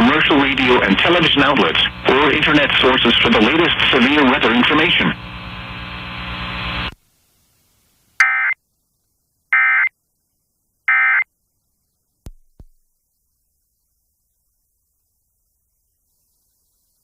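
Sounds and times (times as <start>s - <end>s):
steady electrical buzz: 0.0s - 8.2s.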